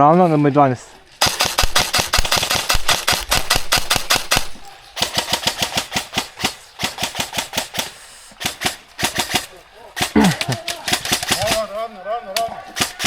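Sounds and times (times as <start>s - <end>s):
airsoft gun firing full auto: 1.2s - 11.8s, 12.4s - 13.0s.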